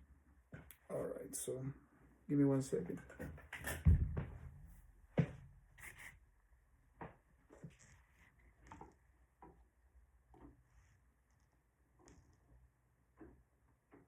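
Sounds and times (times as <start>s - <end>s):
handling thump: 3.7s - 5.4s.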